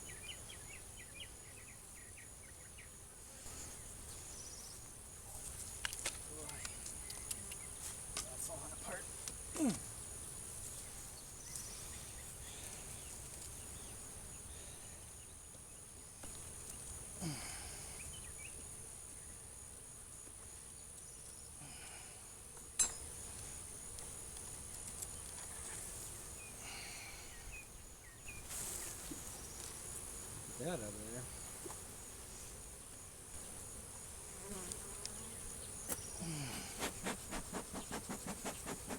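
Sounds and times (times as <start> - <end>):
insects chorus: 0.0 - 38.9.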